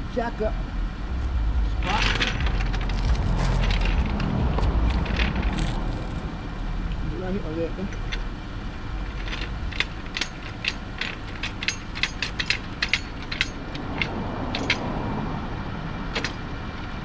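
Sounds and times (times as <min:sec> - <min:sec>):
steady low hum: 0:00.0 - 0:17.0
car jack clicking and ratcheting: 0:01.9 - 0:06.6, 0:07.8 - 0:15.0, 0:16.1 - 0:17.0.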